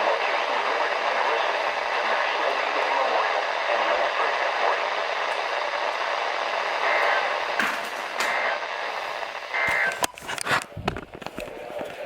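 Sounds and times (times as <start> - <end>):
radio static hiss: 0.0 - 12.0
crackling clicks: 4.0 - 12.0.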